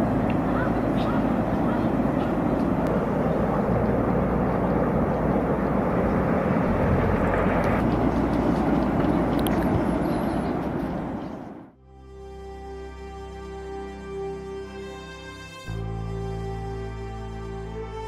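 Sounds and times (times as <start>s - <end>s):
loud rushing rumble: 0.0s - 11.8s.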